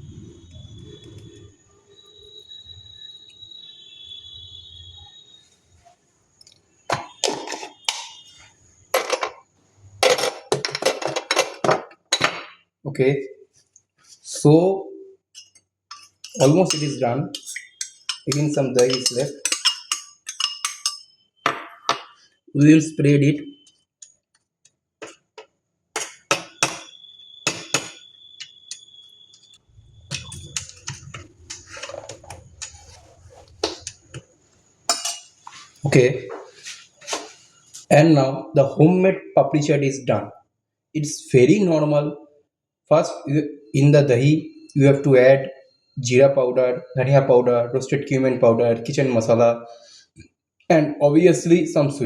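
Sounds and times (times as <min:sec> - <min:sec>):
utensils clinking against steel dishes: 0:15.4 - 0:22.2, 0:30.1 - 0:34.2, 0:34.9 - 0:35.8.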